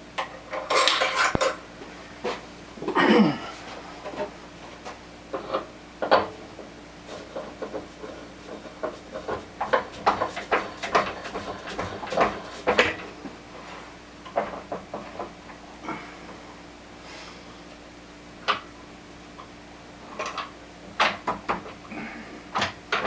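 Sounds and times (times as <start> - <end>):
metal lathe parts clanking: 0.5 - 1.6.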